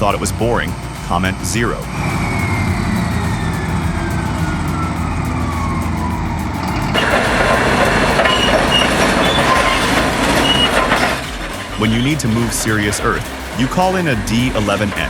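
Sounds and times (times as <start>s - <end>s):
diesel machinery whining: 0.0s - 15.0s
rough machine noise: 0.0s - 15.0s
short squeals or beeps: 7.8s - 12.2s.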